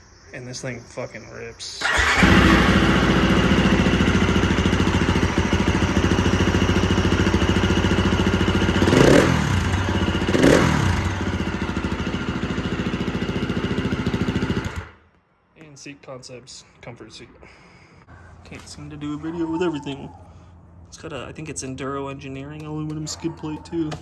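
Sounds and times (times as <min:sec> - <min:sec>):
motorcycle engine idling and revving: 0:01.8 - 0:15.0.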